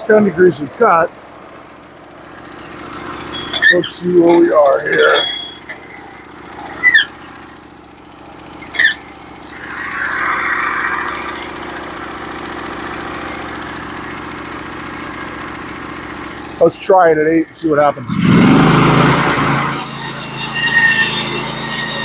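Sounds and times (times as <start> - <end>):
sawmill gas engine running: 0.0 - 22.0
short high squeaks: 2.6 - 7.7, 8.6 - 11.6, 19.3 - 22.0.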